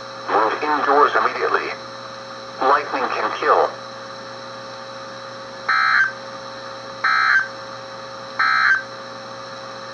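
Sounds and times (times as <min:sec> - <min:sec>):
steady background hum: 0:00.0 - 0:09.9
short data tone bursts: 0:05.7 - 0:06.2, 0:07.0 - 0:07.5, 0:08.4 - 0:08.9.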